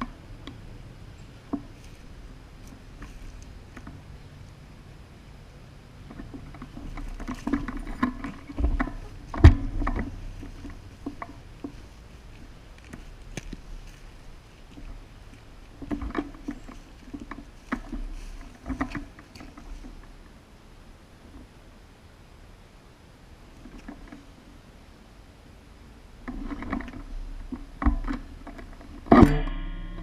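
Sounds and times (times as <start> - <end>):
rustling and scuffing: 1.5 - 4.1, 6.1 - 20.2
sharp knock: 29.1 - 30.0.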